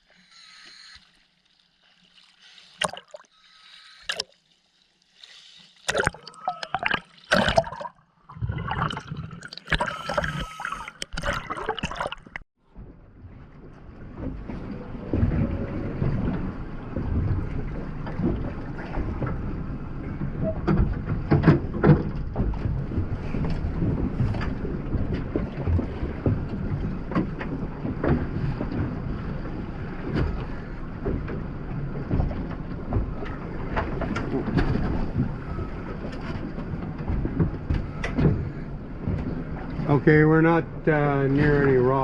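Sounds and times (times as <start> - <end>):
wind rumbling on microphone: 12.6 - 42.0.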